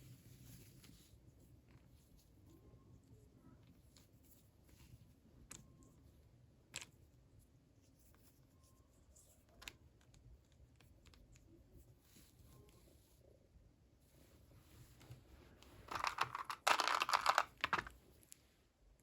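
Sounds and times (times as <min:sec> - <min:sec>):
plastic toy pieces clicking: 0:15.9 - 0:17.9.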